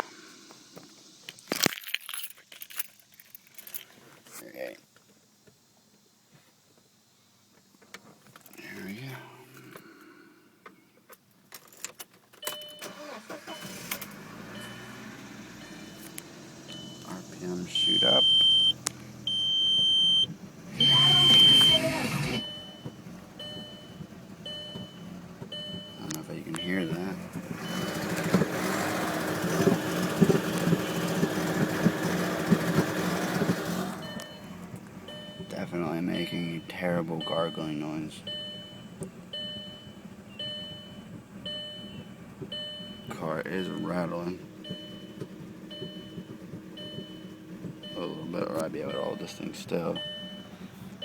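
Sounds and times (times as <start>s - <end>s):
car engine starting and running: 12.4s - 51.0s.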